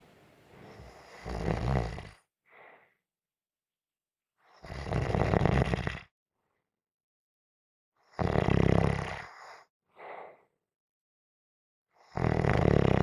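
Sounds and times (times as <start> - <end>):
soft breath: 0.0 - 1.6, 2.5 - 3.0, 10.0 - 10.5
rattling snores: 0.2 - 2.2, 4.6 - 6.0, 8.2 - 9.5, 12.1 - 13.0.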